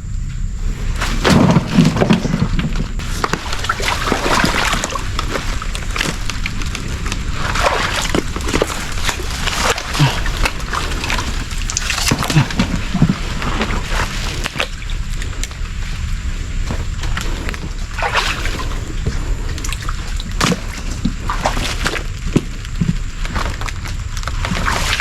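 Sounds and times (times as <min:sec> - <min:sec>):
crackles: 0:00.0 - 0:25.0
water sloshing and splashing: 0:00.8 - 0:25.0.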